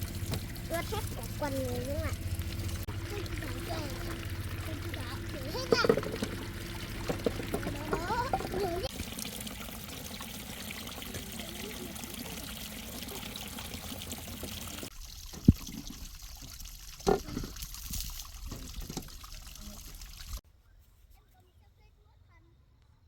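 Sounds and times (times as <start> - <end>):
water pouring and trickling: 0.0 - 20.4
knocks and clatters: 5.6 - 8.9.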